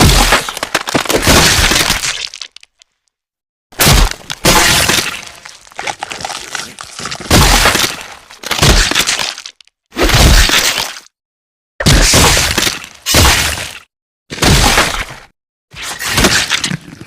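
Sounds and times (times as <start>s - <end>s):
bone cracking hits: 0.0s - 2.9s, 3.8s - 10.8s.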